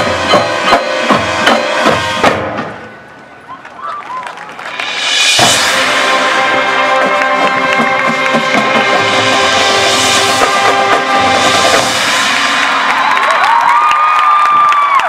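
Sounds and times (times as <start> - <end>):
drumline hits: 0.0 - 3.1, 4.5 - 15.0
brass sustained chords: 4.9 - 13.4.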